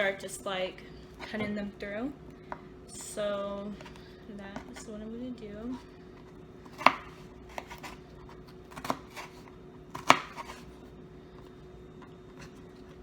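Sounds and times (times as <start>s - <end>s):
knife chopping on cutting board: 6.7s - 8.0s, 8.7s - 10.6s.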